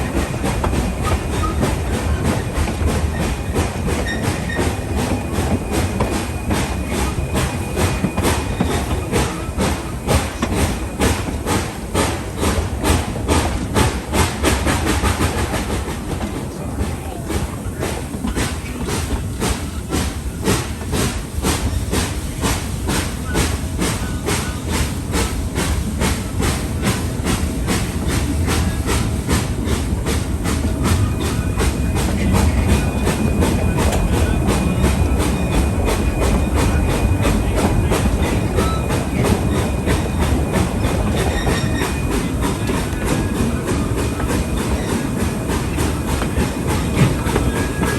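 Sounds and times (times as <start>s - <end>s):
steam train hissing beat: 0.0s - 47.9s
wheels rumbling on rail: 0.0s - 47.9s.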